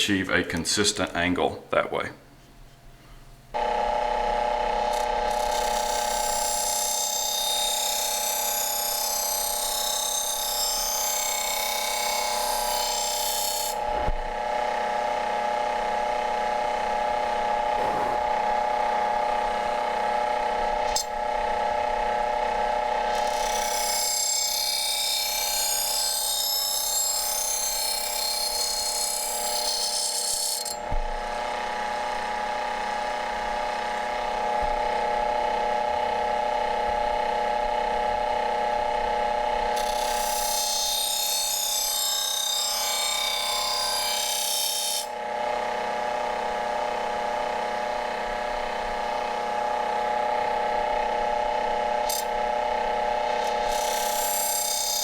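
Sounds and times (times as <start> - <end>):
sharpening wheel motor whine: 3.6 - 55.0
thump: 17.8 - 18.4.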